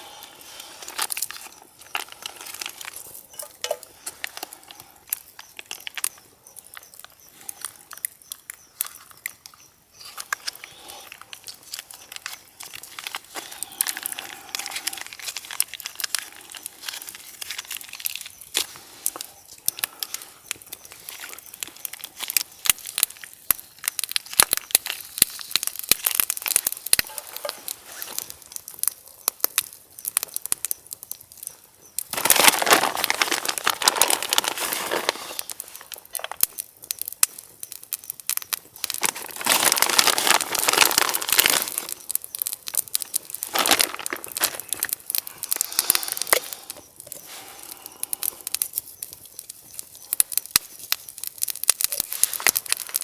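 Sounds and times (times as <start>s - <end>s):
fire hissing: 0.0s - 5.4s, 10.3s - 28.9s, 31.9s - 53.0s
wood fire crackling: 0.0s - 53.0s.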